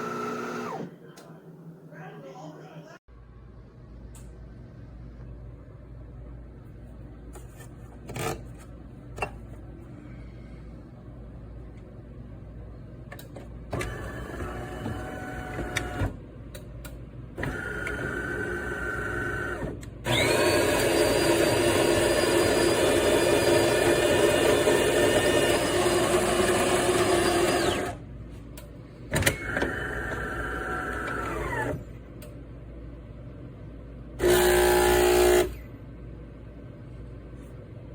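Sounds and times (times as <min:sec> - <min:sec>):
espresso machine motors running: 0:00.0 - 0:01.0, 0:13.8 - 0:16.1, 0:17.4 - 0:28.0, 0:29.4 - 0:31.8, 0:34.2 - 0:35.6.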